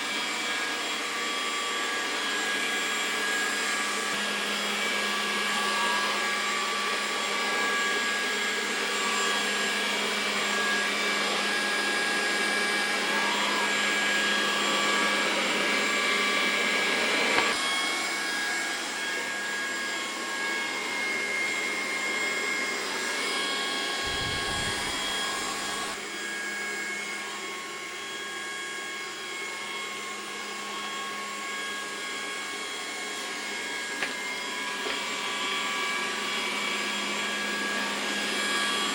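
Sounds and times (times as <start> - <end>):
robot vacuum running: 0.1 - 30.0.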